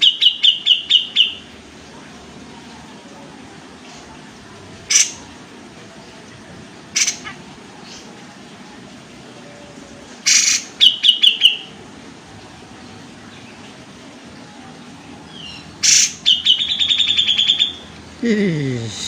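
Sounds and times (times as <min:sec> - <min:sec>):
bird calling harshly: 0:00.0 - 0:01.4, 0:07.0 - 0:07.4, 0:10.2 - 0:11.7, 0:15.4 - 0:17.8.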